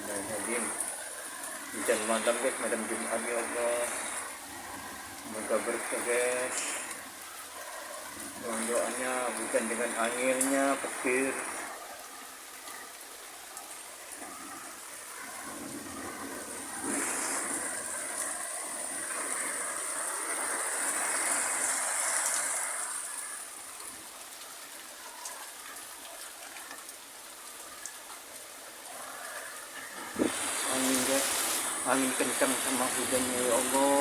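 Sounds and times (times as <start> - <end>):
rain falling: 0.0 - 34.0
gusty wind: 14.2 - 23.1, 29.8 - 33.7.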